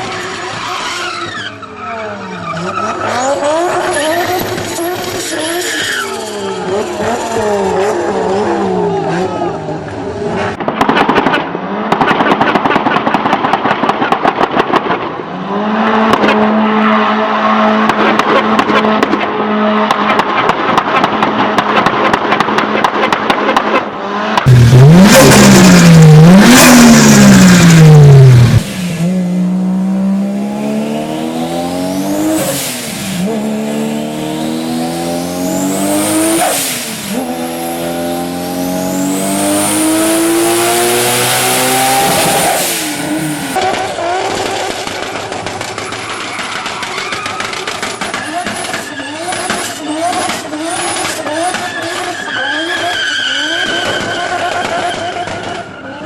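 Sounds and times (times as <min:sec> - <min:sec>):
engine crackling pops: 0:10.5 - 0:15.2, 0:16.1 - 0:16.4, 0:17.8 - 0:28.8, 0:43.6 - 0:55.6
car engine revving: 0:15.3 - 0:46.6
car accelerating through gears: 0:24.0 - 0:44.3.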